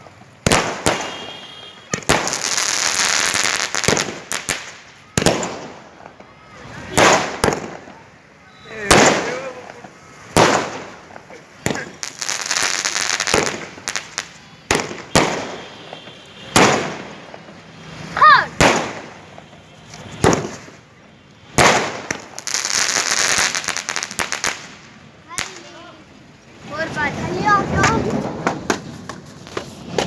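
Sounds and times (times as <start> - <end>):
firework crackling burst: 0.0 - 8.1
firework bangs: 0.0 - 26.0, 26.6 - 30.0.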